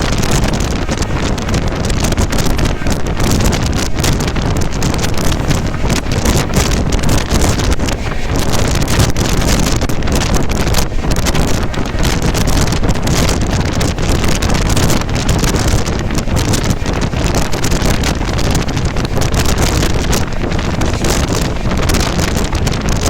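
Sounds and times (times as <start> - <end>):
constant crackle: 0.0 - 23.0
moving vehicle rumble: 0.0 - 23.0
wind buffeting microphone: 0.0 - 23.0.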